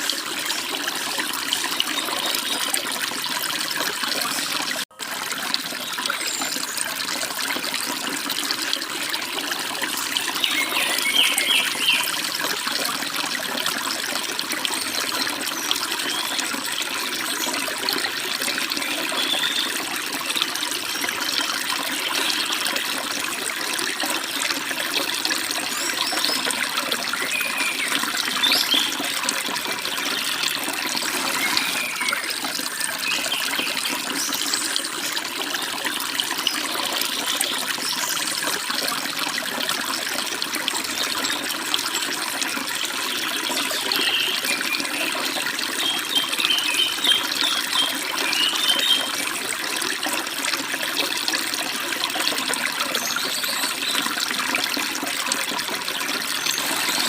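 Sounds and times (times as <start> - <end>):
stream babbling over rocks: 0.0 - 57.0
bird chirps: 10.4 - 12.1.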